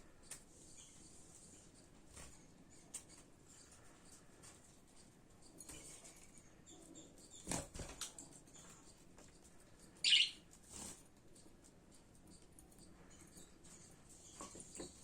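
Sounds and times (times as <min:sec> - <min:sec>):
birds fluttering wings: 0:10.6 - 0:11.1.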